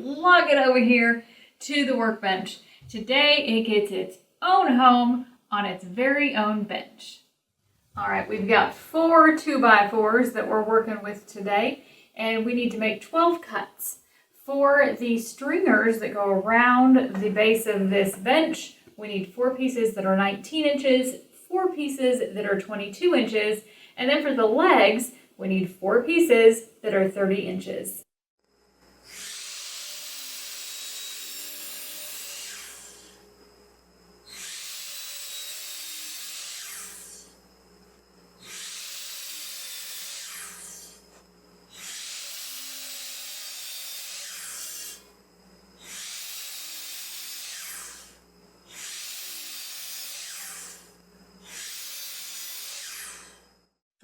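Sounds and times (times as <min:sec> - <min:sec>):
power saw cutting wood: 0:29.0 - 0:33.3, 0:34.2 - 0:37.4, 0:38.4 - 0:45.1, 0:45.8 - 0:53.5.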